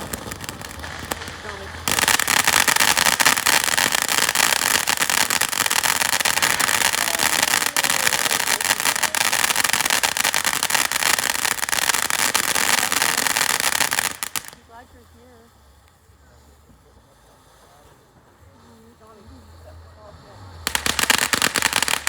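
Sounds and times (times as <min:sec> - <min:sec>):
firework crackling hiss: 0:00.0 - 0:22.0.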